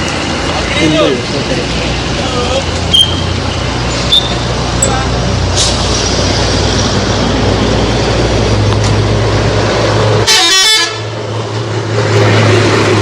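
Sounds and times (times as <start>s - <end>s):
bus engine rumble: 0.0s - 13.0s
musical bus horn: 10.2s - 11.1s.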